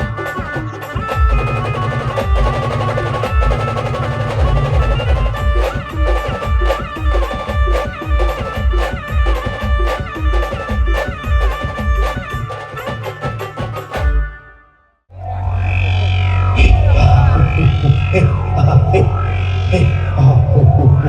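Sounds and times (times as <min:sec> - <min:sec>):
heavy bass drum beat: 0:00.0 - 0:14.2, 0:16.6 - 0:21.0
live band music: 0:00.0 - 0:14.4.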